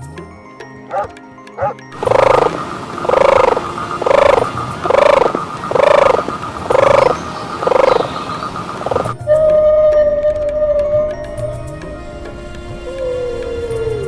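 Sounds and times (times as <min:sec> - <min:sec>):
animal calling: 0:00.9 - 0:12.1
faint steady tone: 0:00.9 - 0:14.0.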